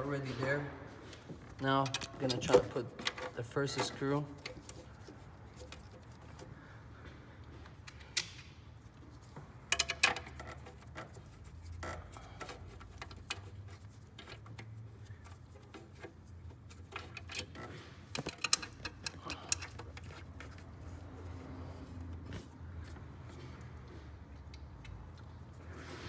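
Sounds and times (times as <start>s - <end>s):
ratchet metal clicks: 9.7s - 14.7s, 15.3s - 20.7s.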